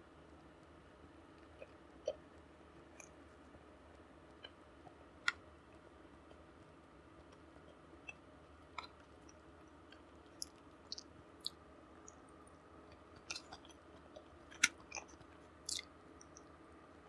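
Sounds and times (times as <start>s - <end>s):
faint background noise: 0.0s - 17.0s
person chewing: 10.4s - 11.6s, 13.2s - 16.4s.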